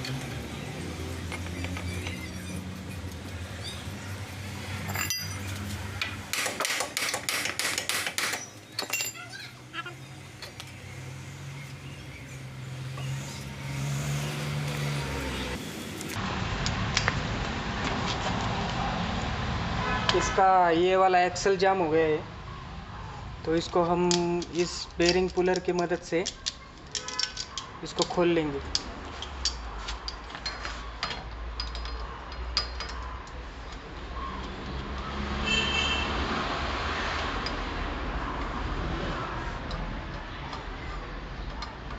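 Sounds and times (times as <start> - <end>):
metallic tool clicks and clinks: 4.8 - 6.2, 7.1 - 9.6, 23.4 - 33.8.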